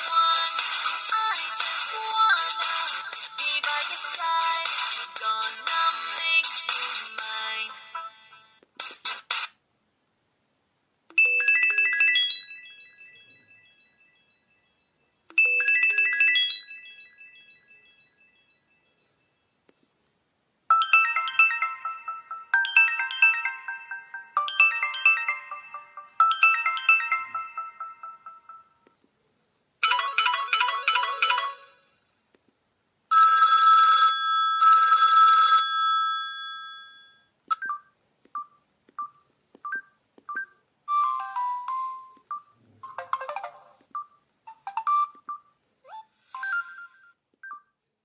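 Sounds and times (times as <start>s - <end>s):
mobile phone ringtone chiming: 11.1s - 19.5s, 20.7s - 28.8s, 29.8s - 32.0s, 33.1s - 37.8s, 40.3s - 45.5s
phone message alert tones: 37.5s - 45.5s.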